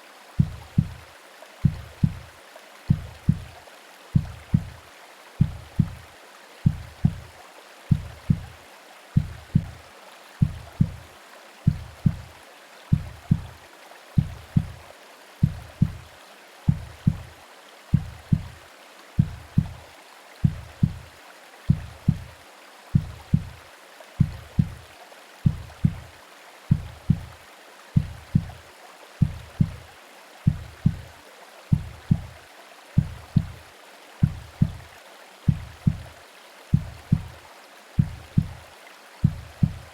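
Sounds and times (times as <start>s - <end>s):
rain: 0.0s - 39.9s
white noise hiss: 0.0s - 39.9s
slow heartbeat thumps: 0.4s - 2.3s, 2.9s - 4.8s, 5.4s - 7.3s, 7.9s - 8.6s, 9.2s - 9.8s, 10.4s - 11.1s, 11.7s - 12.3s, 12.9s - 13.6s, 14.2s - 14.8s, 15.4s - 16.1s, 16.7s - 18.6s, 19.2s - 19.8s, 20.4s - 21.1s, 21.7s - 22.3s, 23.0s - 23.6s, 24.2s - 27.4s, 28.0s - 28.6s, 29.2s - 29.9s, 30.5s - 31.1s, 31.7s - 32.4s, 33.0s - 34.9s, 35.5s - 37.4s, 38.0s - 38.6s, 39.2s - 39.9s.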